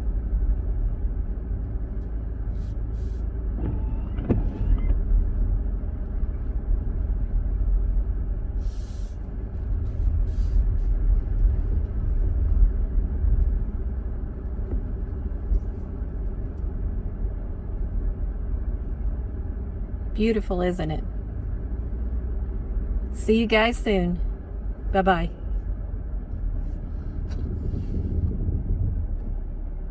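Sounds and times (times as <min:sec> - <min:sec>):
car engine rumble inside cabin: 0:00.0 - 0:29.9.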